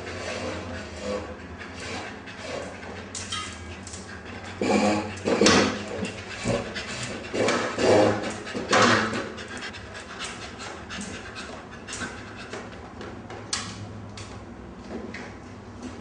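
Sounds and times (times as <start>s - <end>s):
dog panting: 0.1s - 12.8s.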